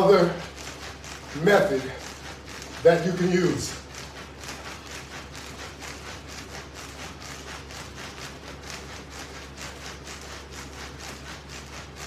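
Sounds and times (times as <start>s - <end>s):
hula hoop swishing: 0.0s - 12.0s.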